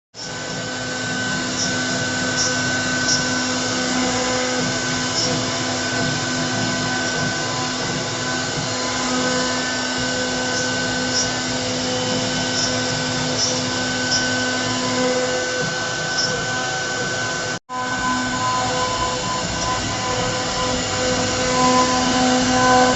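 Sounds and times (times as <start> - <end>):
router spindle whirring: 0.2 - 22.9.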